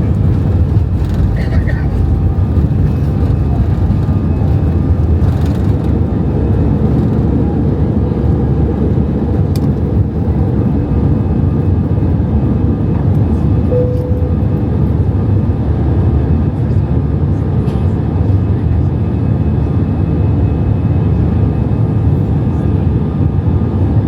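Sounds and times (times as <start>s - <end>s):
airliner cabin engine rumble: 0.0s - 24.0s
faint tone: 13.7s - 15.2s.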